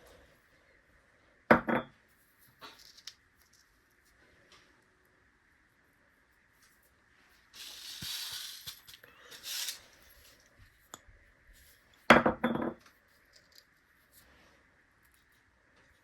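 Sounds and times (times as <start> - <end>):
rustling: 6.5 - 10.9
seeds rattling in plastic dispenser: 7.6 - 10.5.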